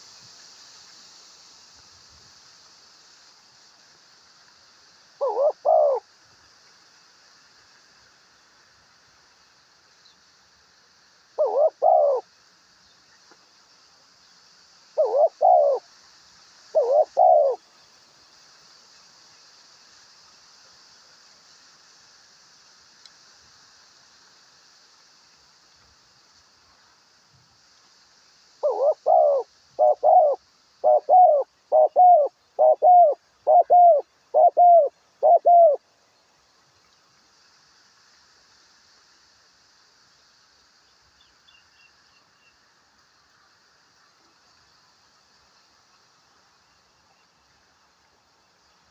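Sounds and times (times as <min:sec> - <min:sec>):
dove cooing: 0:05.2 - 0:06.0, 0:11.4 - 0:12.2, 0:15.0 - 0:15.8, 0:16.7 - 0:17.6, 0:28.6 - 0:35.8.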